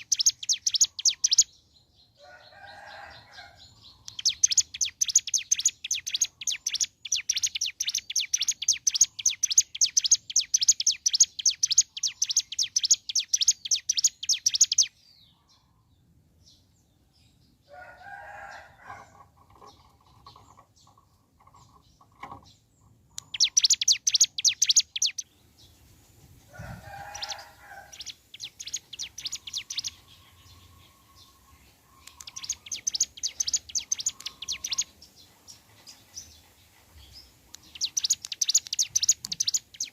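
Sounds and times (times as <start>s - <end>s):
lower rough bird calls: 26.4s - 36.3s.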